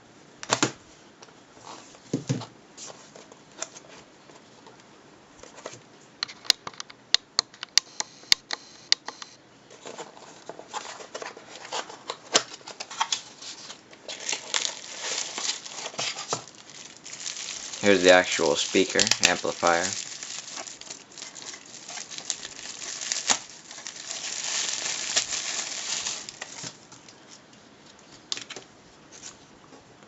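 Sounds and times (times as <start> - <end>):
packaging rustling and crinkling: 9.8 - 27.4.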